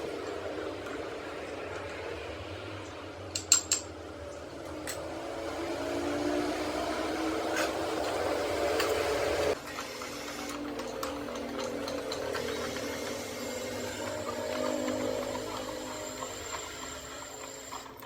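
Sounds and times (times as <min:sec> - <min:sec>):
electric motor humming: 0:04.7 - 0:18.0.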